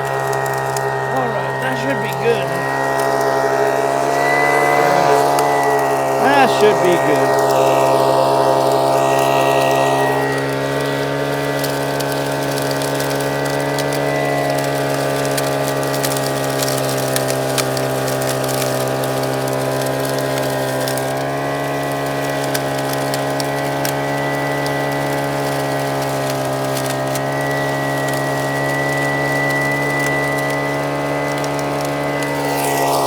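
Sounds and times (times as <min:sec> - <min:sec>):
vacuum motor droning: 0:00.0 - 0:33.0.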